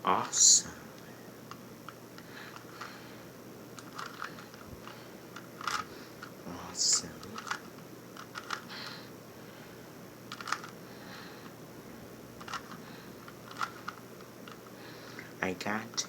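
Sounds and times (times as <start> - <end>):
puzzle cube plastic clicks: 3.8 - 6.3, 7.1 - 8.7, 10.3 - 10.8, 12.4 - 14.7.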